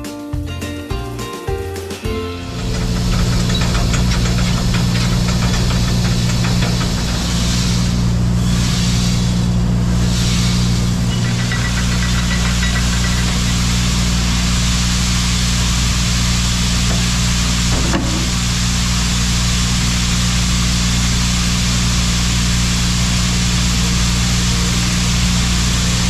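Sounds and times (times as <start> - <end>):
engine running with hiss: 2.3 - 26.0.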